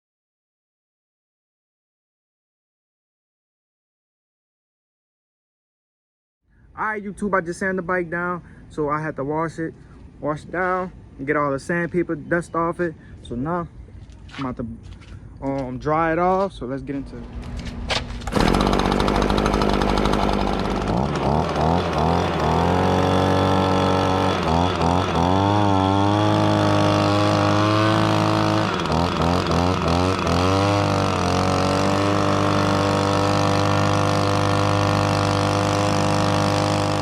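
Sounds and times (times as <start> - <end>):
leaf blower running: 18.1 - 37.0.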